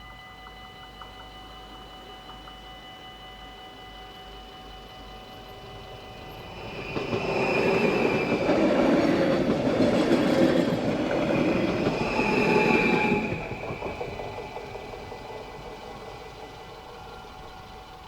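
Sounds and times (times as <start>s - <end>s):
train wheels rumbling and clattering: 4.9s - 18.0s
high wheel squeal: 5.0s - 18.0s.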